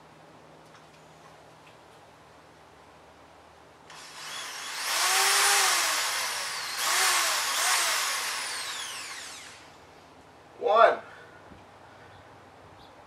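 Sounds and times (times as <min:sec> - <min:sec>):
power drill boring: 0:03.9 - 0:09.8.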